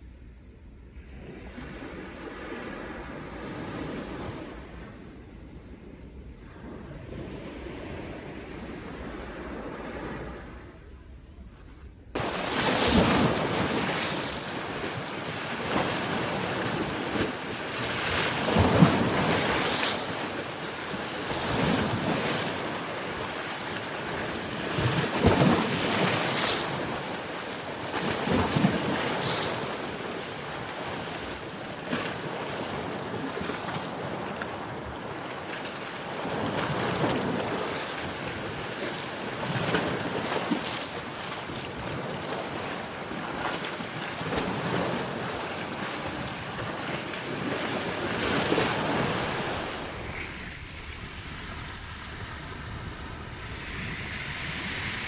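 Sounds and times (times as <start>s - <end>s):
waves breaking on shore: 12.2s - 55.0s.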